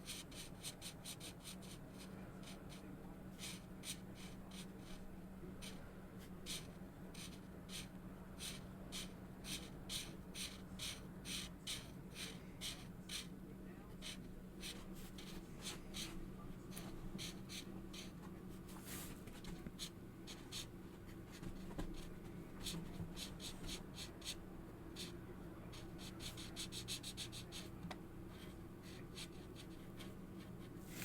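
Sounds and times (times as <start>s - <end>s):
markers rubbing on paper: 0.0s - 2.8s, 3.4s - 5.8s, 6.4s - 13.3s, 14.0s - 18.2s, 28.4s - 30.1s, 30.8s - 31.0s
faint low hum: 0.0s - 31.0s.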